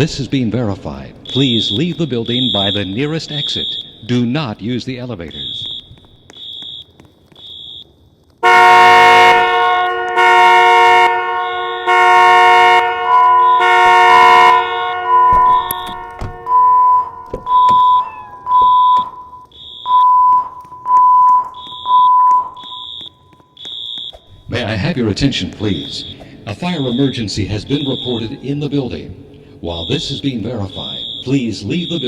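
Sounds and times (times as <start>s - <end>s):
fire alarm horn blasts: 1.2s - 4.3s, 5.3s - 7.8s, 8.4s - 24.4s, 25.6s - 32.0s
two-pitch alarm beeping: 1.2s - 4.3s, 5.3s - 7.8s, 11.4s - 24.4s, 25.7s - 28.5s, 29.7s - 32.0s.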